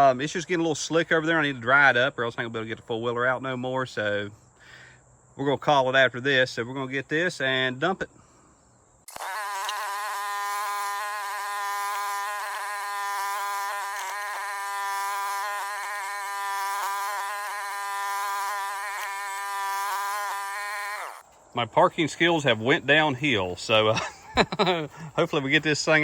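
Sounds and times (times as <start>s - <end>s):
excavator engine buzzing: 9.1s - 21.4s.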